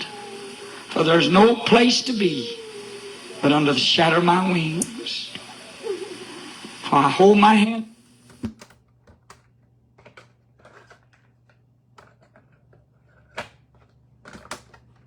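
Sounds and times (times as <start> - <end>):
steady low hum: 0.0 - 8.3.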